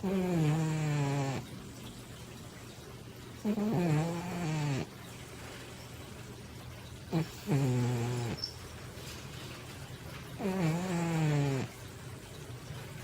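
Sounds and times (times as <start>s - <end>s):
cat snoring: 0.0s - 1.5s, 3.4s - 4.9s, 7.1s - 8.4s, 10.4s - 11.8s.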